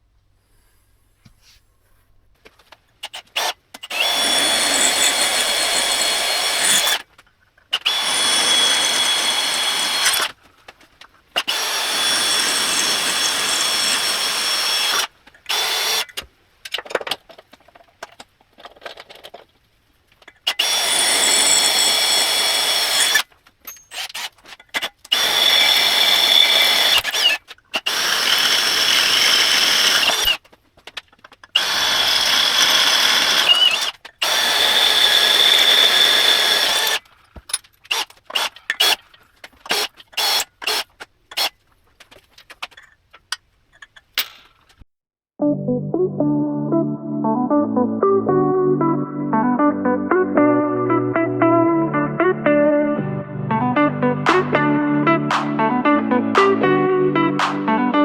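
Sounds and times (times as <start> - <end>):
electric drill whining: 3.1 - 7.0, 7.7 - 10.4, 11.4 - 16.2, 20.5 - 23.2, 25.1 - 30.4, 31.6 - 37.0
small clicks and knocks: 40.9 - 44.8.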